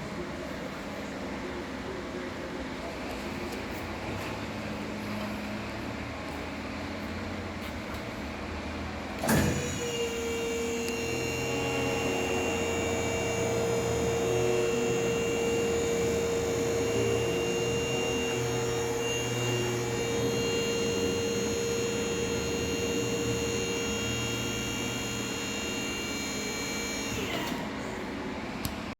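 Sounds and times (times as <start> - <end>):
hydraulic pump whining: 9.2 - 27.8.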